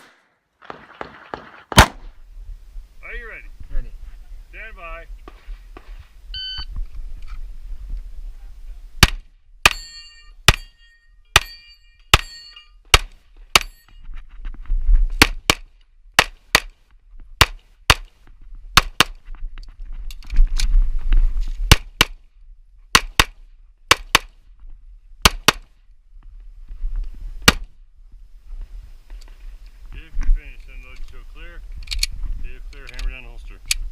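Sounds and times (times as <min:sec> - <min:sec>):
handgun shots: 0:00.0 - 0:02.0
short ringing tone: 0:06.4 - 0:06.7.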